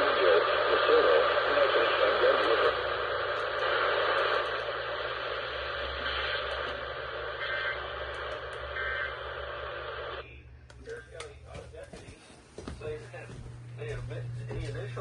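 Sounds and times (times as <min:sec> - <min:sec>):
radio static hiss: 0:00.0 - 0:15.0.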